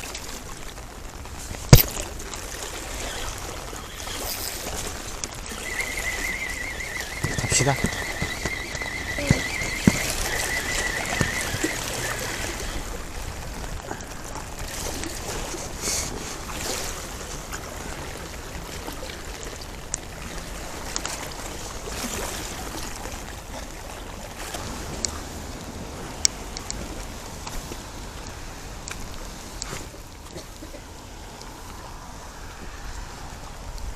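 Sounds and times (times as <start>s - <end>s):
rain hissing: 0.8s - 14.2s
small sharp ticks: 2.7s - 12.9s
thin high whine: 2.9s - 13.0s.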